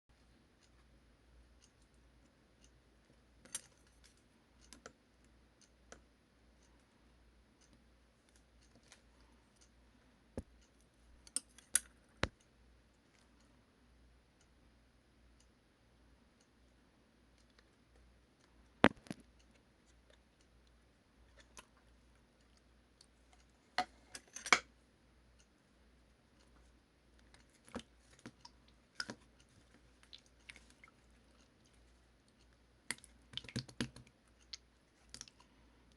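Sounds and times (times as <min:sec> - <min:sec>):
sharp clicks and taps: 0:18.4 - 0:20.2.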